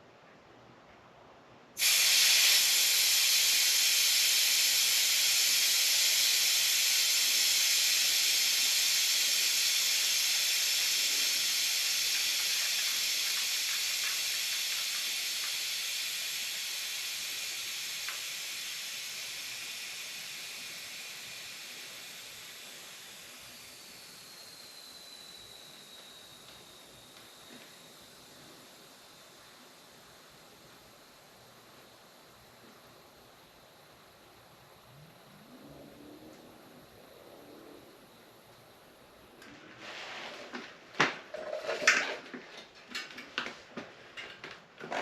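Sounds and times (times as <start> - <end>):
air hissing from tire valve: 1.8 - 40.6
faint high whistle: 13.9 - 29.5.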